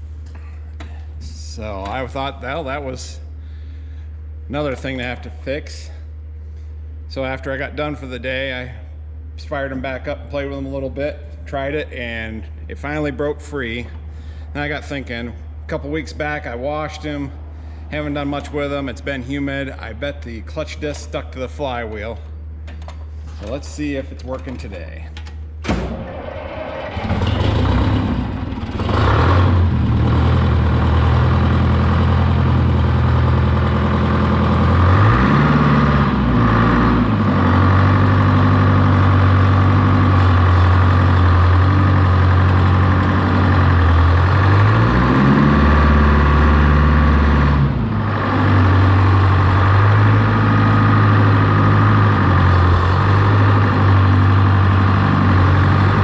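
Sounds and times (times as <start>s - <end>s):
old tractor engine running: 26.1s - 56.0s.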